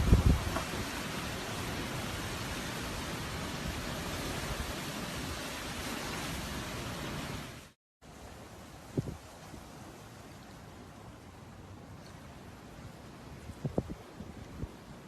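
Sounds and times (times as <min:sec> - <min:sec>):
surf rushing: 0:00.0 - 0:07.7
wind: 0:00.0 - 0:15.0.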